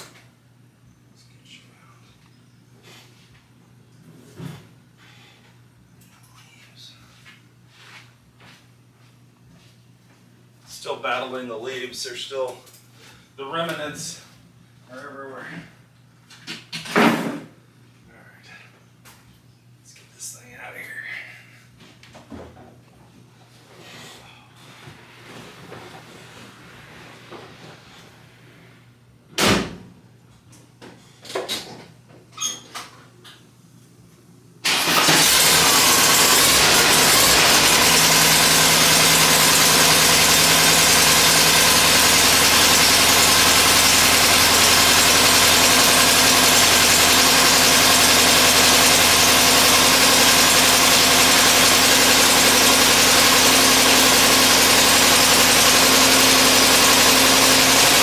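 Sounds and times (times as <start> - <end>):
car engine starting and idling: 34.6 - 58.0.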